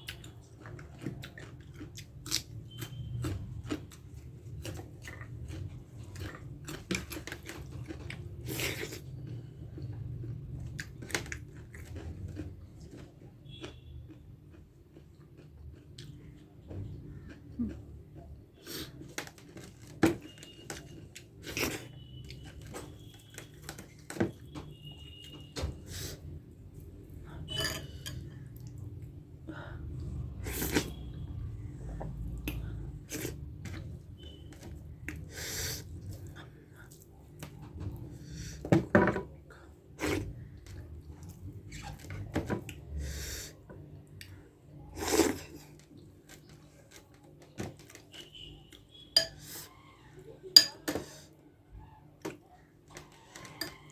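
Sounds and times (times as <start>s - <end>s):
chewing and mouth noises: 0.0s - 19.7s
dishes clicking and clinking: 27.5s - 28.4s, 50.6s - 51.1s.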